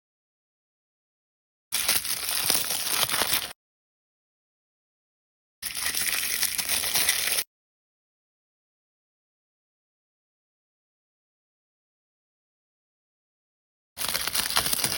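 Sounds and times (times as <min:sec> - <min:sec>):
plastic packaging crinkling and tearing: 0:01.8 - 0:03.6, 0:05.6 - 0:07.4, 0:14.0 - 0:14.9.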